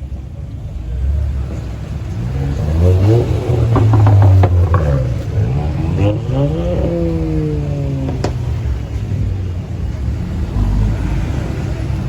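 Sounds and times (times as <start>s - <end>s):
car engine revving: 0.0s - 12.0s
sharp exhaust cracks: 1.5s - 9.6s.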